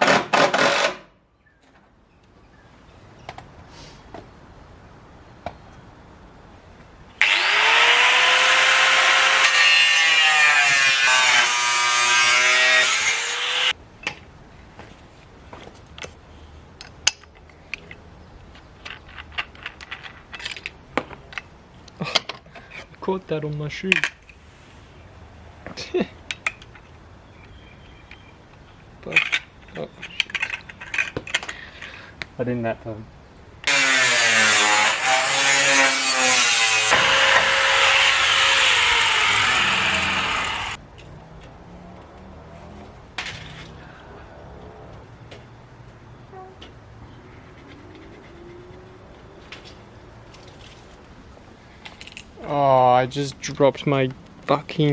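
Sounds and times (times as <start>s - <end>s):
short scrape: 3.7s - 4.1s
angle grinder cutting sheet metal: 7.2s - 13.7s, 33.7s - 40.8s
hand tools clicking and knocking: 26.2s - 32.0s.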